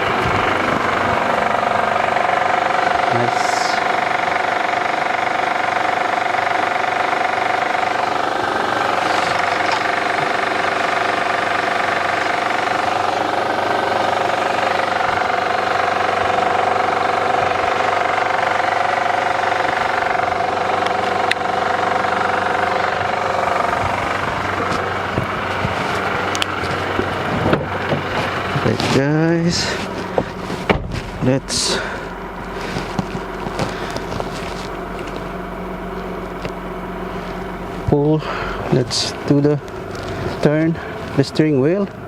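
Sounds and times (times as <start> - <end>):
car engine idling: 0.0 - 42.0.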